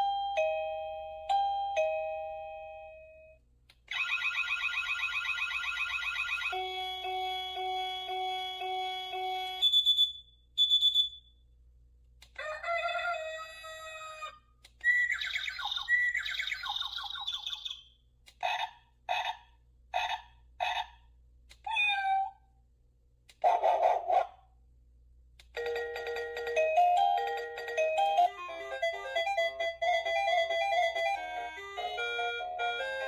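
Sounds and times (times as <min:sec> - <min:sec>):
doorbell chime tones: 0:00.0 - 0:03.4, 0:06.5 - 0:09.6.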